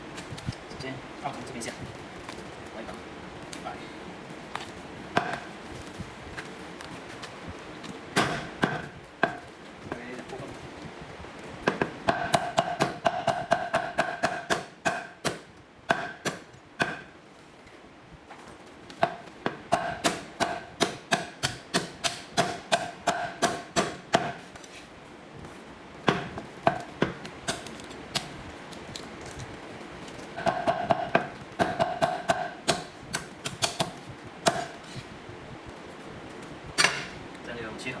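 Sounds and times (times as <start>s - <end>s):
cleaver chopping on a board: 5.2s - 5.5s, 8.2s - 9.4s, 11.7s - 17.1s, 19.0s - 24.4s, 30.4s - 34.8s.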